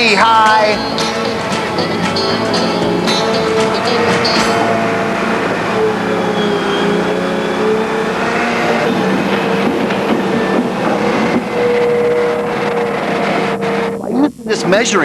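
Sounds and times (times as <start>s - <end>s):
excavator engine and hydraulics: 0.0s - 15.0s.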